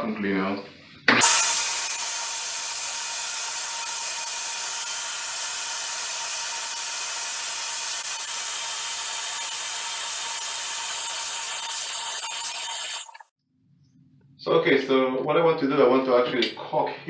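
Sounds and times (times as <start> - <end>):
vacuum cleaner running: 1.2 - 13.2.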